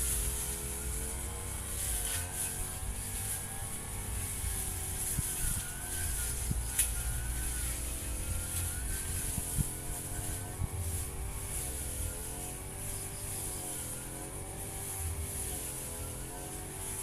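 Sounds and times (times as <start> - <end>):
brush cutter engine running: 0.0 - 17.0.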